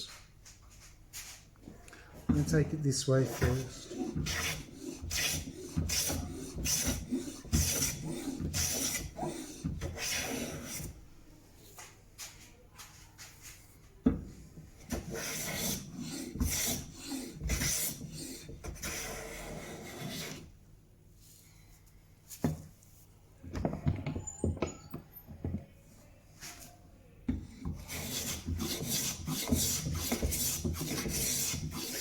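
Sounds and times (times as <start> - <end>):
hand plane hissing strokes: 3.3 - 10.9, 15.1 - 20.4, 27.8 - 32.0.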